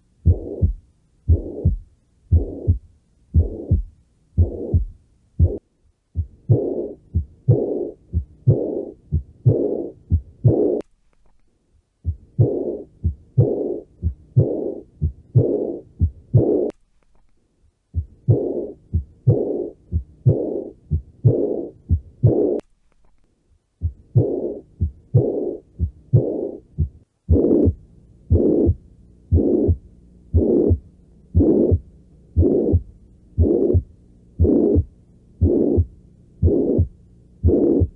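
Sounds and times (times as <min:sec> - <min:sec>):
heartbeat thump with whoosh: 0:00.2 - 0:02.8, 0:03.4 - 0:05.6
click: 0:10.8 - 0:11.5, 0:16.7 - 0:17.4, 0:22.6 - 0:23.3.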